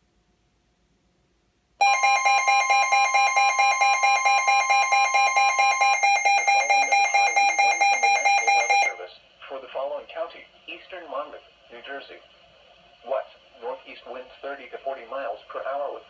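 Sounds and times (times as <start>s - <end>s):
rapid electronic beeping: 1.8s - 9.0s
steady warning tone: 1.8s - 9.0s
faint broadcast voice: 6.0s - 16.0s.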